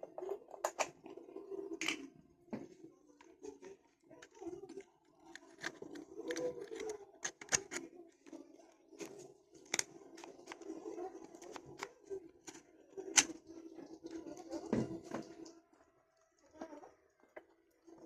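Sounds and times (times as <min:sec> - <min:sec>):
hard objects clicking and knocking: 0:05.2 - 0:07.9.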